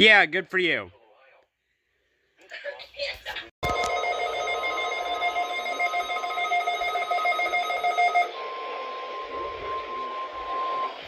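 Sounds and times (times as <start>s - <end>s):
chord of electronic alert tones: 3.6s - 11.0s
steady pure alarm tone: 3.6s - 11.0s.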